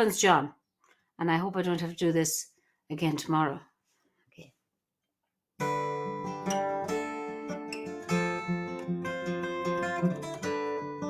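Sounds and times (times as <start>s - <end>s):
acoustic guitar strumming: 5.6s - 11.0s.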